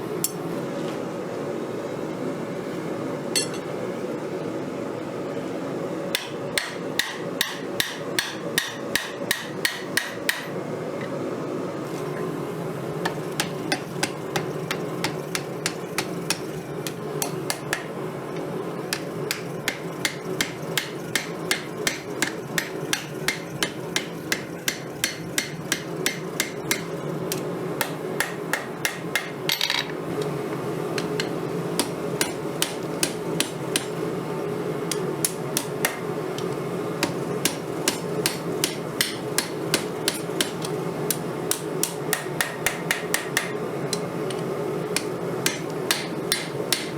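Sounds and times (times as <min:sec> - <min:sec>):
hammer striking steel on anvil: 0:03.4 - 0:03.6, 0:06.2 - 0:10.6, 0:13.0 - 0:17.9, 0:18.9 - 0:29.8, 0:31.0 - 0:34.0, 0:34.9 - 0:46.9.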